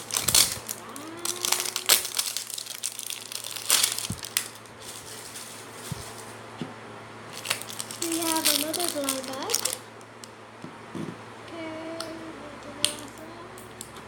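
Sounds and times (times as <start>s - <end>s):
plastic wrapping crinkling: 0.0s - 6.4s, 7.3s - 9.9s.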